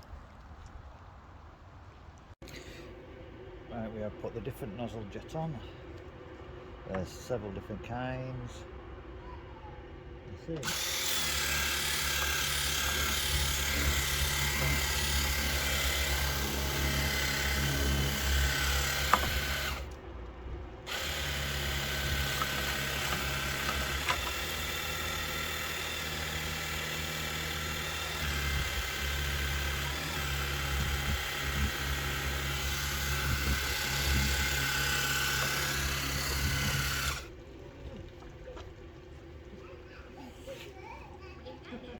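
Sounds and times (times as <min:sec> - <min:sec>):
electric pump humming: 0:10.5 - 0:20.1, 0:20.8 - 0:39.6.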